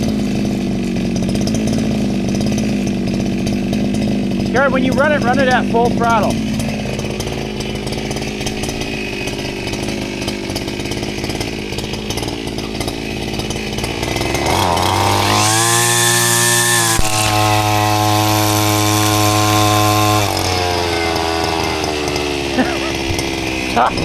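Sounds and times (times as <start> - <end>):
small engine idling and revving: 0.0 - 24.0.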